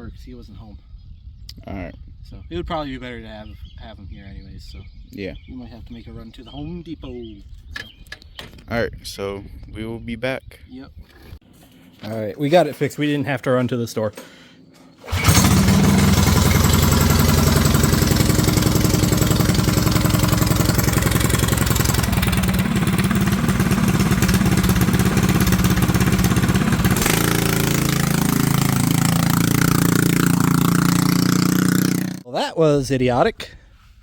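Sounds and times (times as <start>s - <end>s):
small engine running hard: 15.0s - 32.2s.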